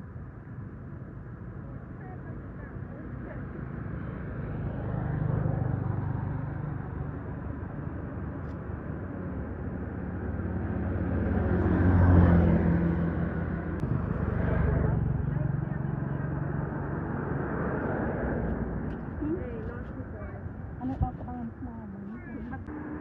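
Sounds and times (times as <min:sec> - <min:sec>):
vehicle engine passing: 0:02.2 - 0:23.0.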